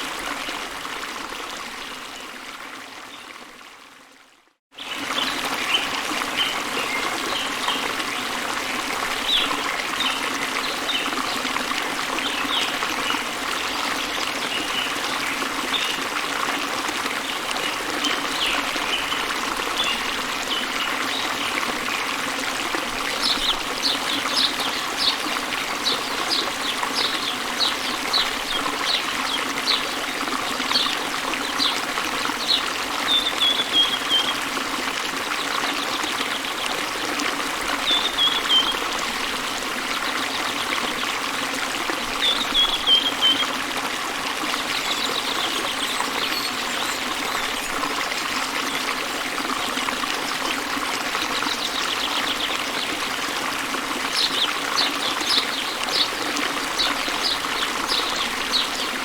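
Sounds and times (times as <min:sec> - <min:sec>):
waterfall rushing: 0:18.2 - 0:34.8, 0:51.2 - 0:59.0
small birds chirping: 0:23.1 - 0:30.0, 0:54.2 - 0:59.0.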